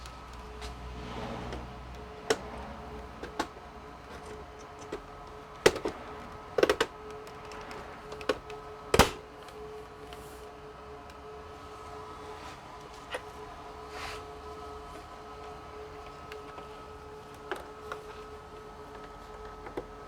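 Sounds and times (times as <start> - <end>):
hands clicking on computer parts: 6.6 - 9.2.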